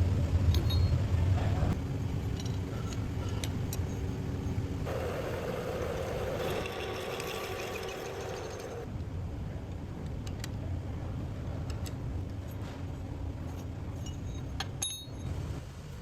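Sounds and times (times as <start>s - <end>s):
metal lathe motor hum: 4.9s - 8.9s.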